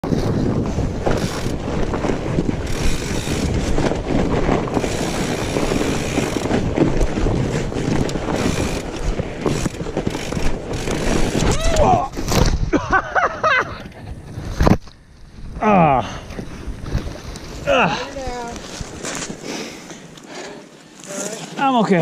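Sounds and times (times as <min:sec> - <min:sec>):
wind buffeting microphone: 0:00.0 - 0:19.8
bike riding rough trail rumble: 0:00.0 - 0:22.0.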